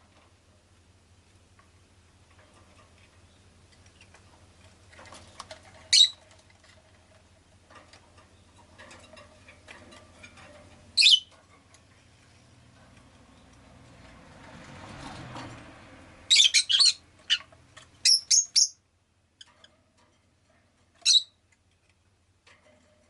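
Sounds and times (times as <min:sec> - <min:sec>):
faint clicks and rustles: 0:00.0 - 0:16.0, 0:17.0 - 0:18.1, 0:19.4 - 0:23.0
lovebird shrill chirps: 0:05.9 - 0:06.2, 0:11.0 - 0:11.3, 0:16.3 - 0:17.4, 0:18.0 - 0:18.8, 0:21.0 - 0:21.3.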